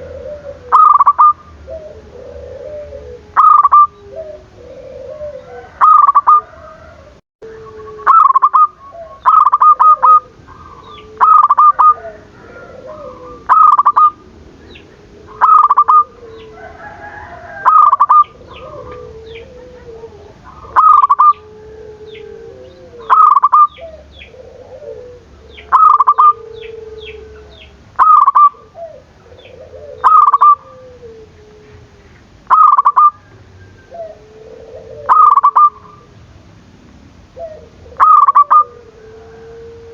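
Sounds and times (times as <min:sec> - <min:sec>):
doves cooing: 0:00.0 - 0:39.9
high bird chirps: 0:03.4 - 0:03.9, 0:05.8 - 0:06.4, 0:08.0 - 0:12.0, 0:13.4 - 0:16.1, 0:17.7 - 0:18.7, 0:23.1 - 0:24.3, 0:25.6 - 0:28.6, 0:32.5 - 0:33.2, 0:35.1 - 0:36.0, 0:38.0 - 0:38.6.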